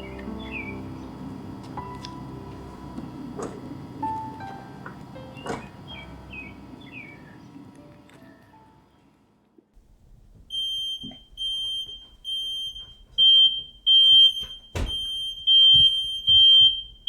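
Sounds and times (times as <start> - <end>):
smoke alarm beeping: 10.5 - 17.0.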